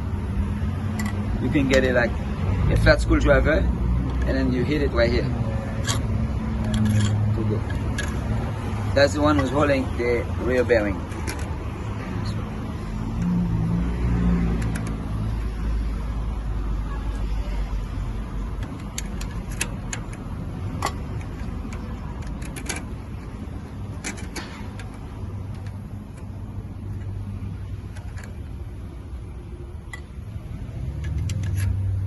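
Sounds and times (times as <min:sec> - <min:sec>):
hand tools tapping metal: 0:05.8 - 0:08.3, 0:18.6 - 0:26.3.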